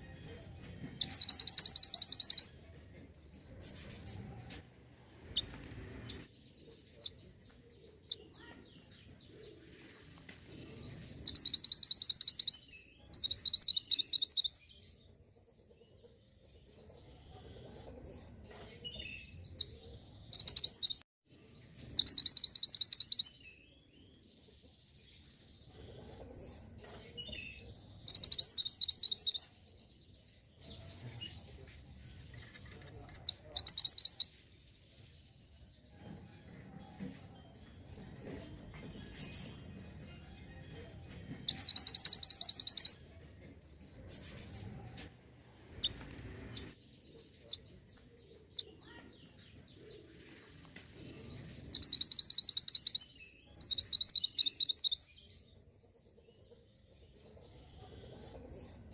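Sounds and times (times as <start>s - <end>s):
faint soft bird chirps: 0.0s - 2.6s, 5.2s - 36.1s, 41.4s - 43.0s, 45.7s - 55.6s
bird chirping trills: 0.0s - 4.4s, 10.6s - 15.2s, 18.3s - 24.6s, 26.6s - 31.2s, 32.3s - 36.1s, 37.4s - 43.2s, 51.1s - 57.5s.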